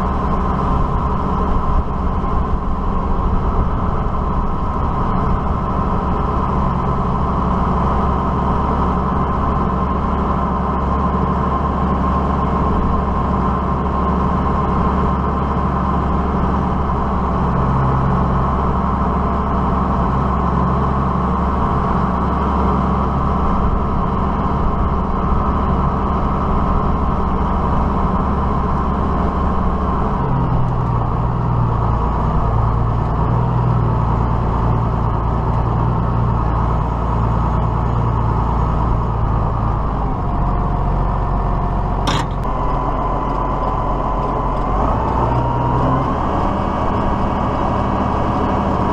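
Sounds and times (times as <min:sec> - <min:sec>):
diesel tractor engine running: 0:00.0 - 0:48.9.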